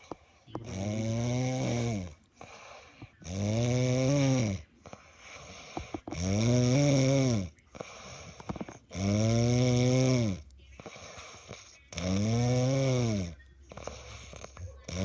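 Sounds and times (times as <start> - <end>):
quiet breath: 0.0 - 0.8, 1.6 - 3.4, 4.5 - 6.2, 7.4 - 8.9, 10.3 - 11.9, 13.0 - 14.8
person snoring: 0.6 - 15.0.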